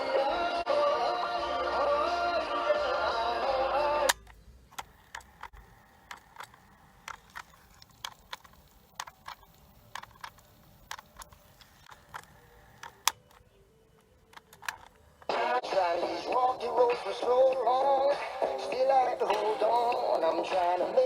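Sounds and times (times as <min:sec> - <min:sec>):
cassette music playback: 0:00.0 - 0:21.0
small mechanical clicks and taps: 0:04.1 - 0:15.0.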